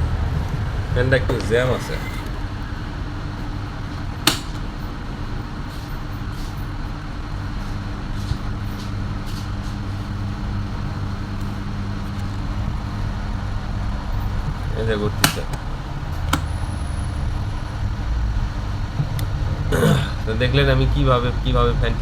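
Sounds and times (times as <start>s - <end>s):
electric fan motor running: 0.0s - 22.0s
mains hum: 0.0s - 22.0s
sharp click: 4.3s - 4.6s.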